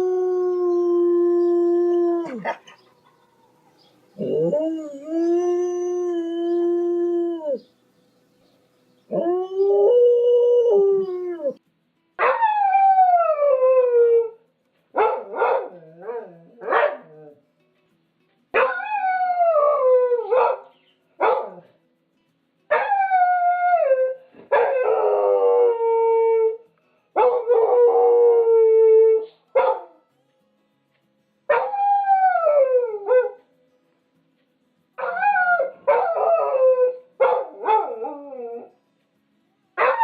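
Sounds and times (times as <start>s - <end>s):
dog howling: 0.0s - 2.8s, 4.2s - 7.6s
dog yipping: 2.2s - 3.4s.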